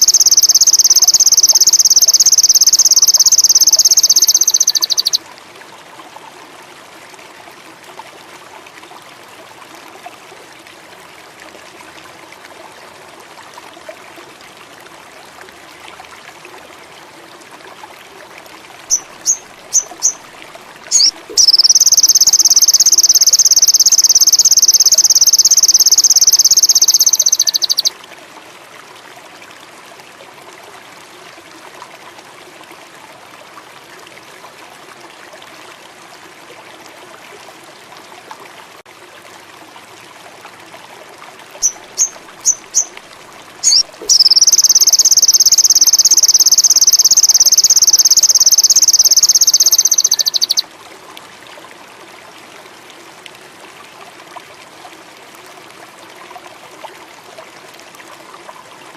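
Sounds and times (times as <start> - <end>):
insects: 0.0 - 5.2, 20.9 - 27.9, 43.6 - 50.6
short high bird chirps: 0.0 - 5.2, 18.9 - 20.2, 20.9 - 27.9, 41.6 - 42.9, 43.6 - 50.6
songbird buzzing trill: 0.0 - 5.2, 20.9 - 27.9, 43.6 - 50.6
trickle of running water: 0.0 - 58.9.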